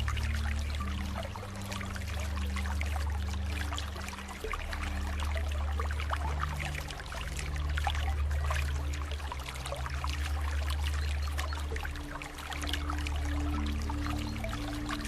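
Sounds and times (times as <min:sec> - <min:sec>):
soft low sustained music notes: 0:00.0 - 0:15.0
water trickling and splashing: 0:00.0 - 0:15.0.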